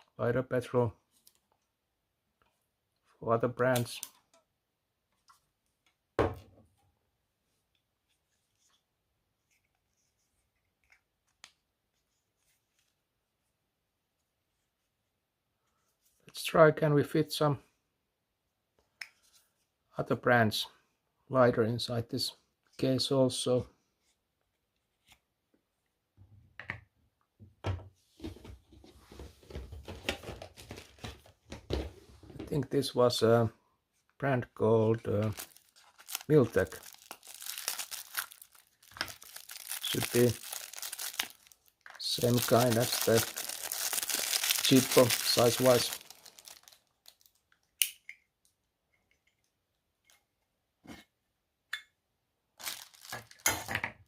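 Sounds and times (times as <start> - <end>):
rustling handling noise: 28.2 - 32.6, 34.8 - 47.6, 52.6 - 53.5.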